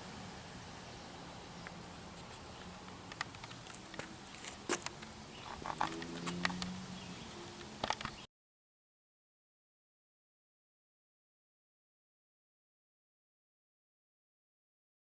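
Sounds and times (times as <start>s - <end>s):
faint hiss: 0.0s - 5.5s.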